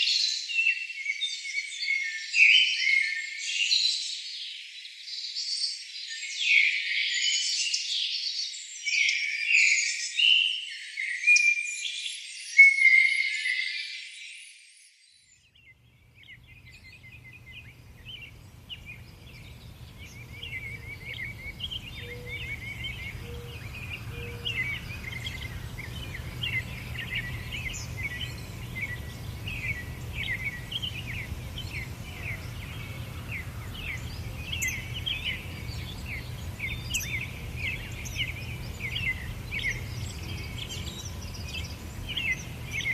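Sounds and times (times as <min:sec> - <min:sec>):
forest birds calling: 0:00.0 - 0:42.9
chorus of quick bird chirps: 0:06.4 - 0:42.9
low steady rumble: 0:16.0 - 0:42.9.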